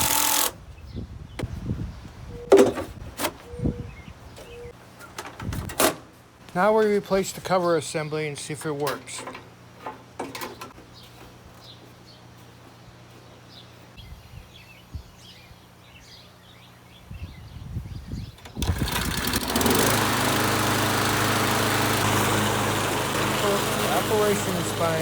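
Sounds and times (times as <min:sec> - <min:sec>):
lawn mower engine running: 0:00.0 - 0:00.6, 0:18.6 - 0:25.0.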